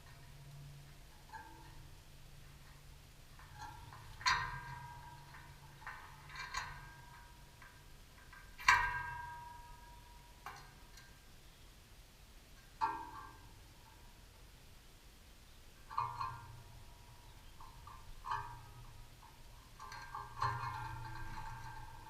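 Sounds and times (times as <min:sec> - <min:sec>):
sharp ringing metallic knocks: 0:03.4 - 0:10.8, 0:12.8 - 0:13.9, 0:15.8 - 0:22.0.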